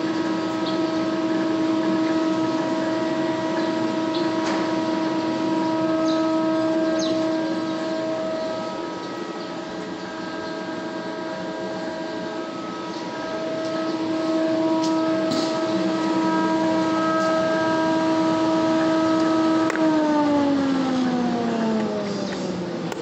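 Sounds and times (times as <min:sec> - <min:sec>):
thickness planer humming: 0:00.0 - 0:23.0.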